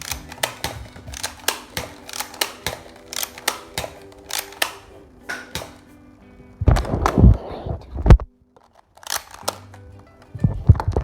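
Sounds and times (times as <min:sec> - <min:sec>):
toy blaster plastic clicks: 0:00.0 - 0:05.9, 0:08.6 - 0:09.8.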